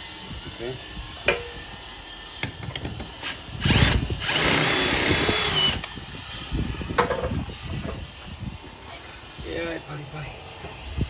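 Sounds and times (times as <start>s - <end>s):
cordless hammer drill running: 3.6s - 5.8s.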